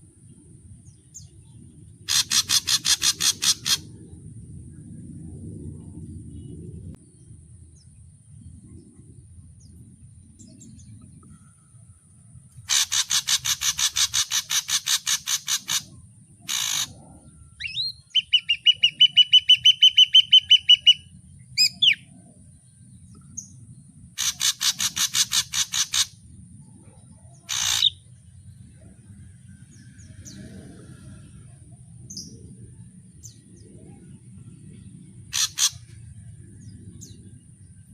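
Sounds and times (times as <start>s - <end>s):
bird calling with pulsed notes: 2.0s - 3.8s, 12.7s - 22.2s, 27.4s - 28.0s, 35.3s - 36.0s
bird trill of whistled notes: 17.6s - 22.1s.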